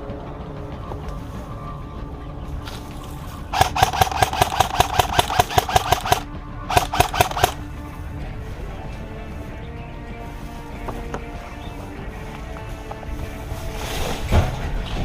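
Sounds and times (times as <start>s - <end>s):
background music: 0.0s - 15.0s
airsoft gun firing: 3.5s - 7.6s.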